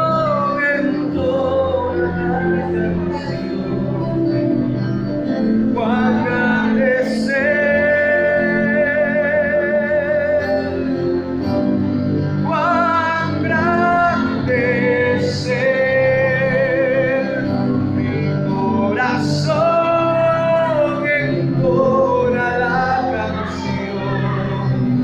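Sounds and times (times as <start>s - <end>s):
instrumental accompaniment: 0.0s - 25.0s
voices singing a hymn: 5.6s - 10.9s, 12.4s - 25.0s.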